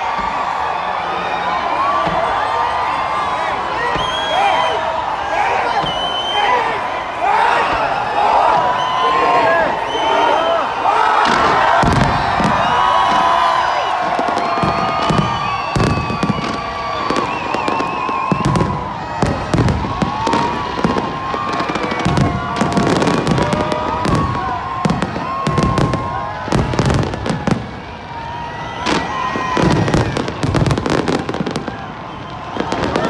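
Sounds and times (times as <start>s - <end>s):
fireworks bangs and crackling: 0.0s - 1.0s, 1.6s - 7.0s, 7.6s - 33.0s.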